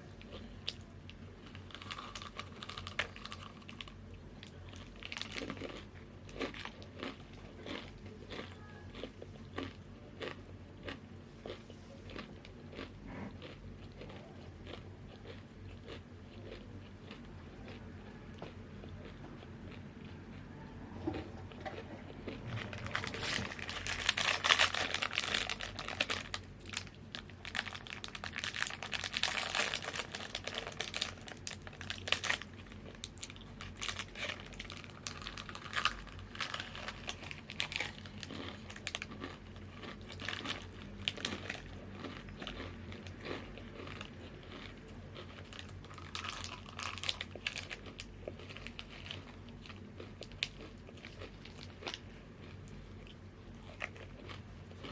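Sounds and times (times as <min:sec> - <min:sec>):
plastic chip bag crinkling: 0:01.4 - 0:10.3, 0:22.3 - 0:52.0.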